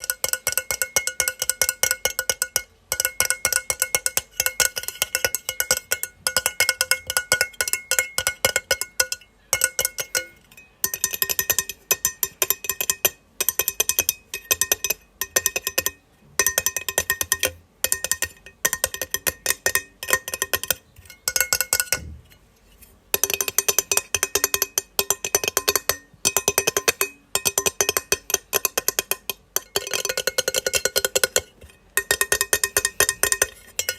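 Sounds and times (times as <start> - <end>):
metal plate clicking rapidly: 23.1 - 33.9.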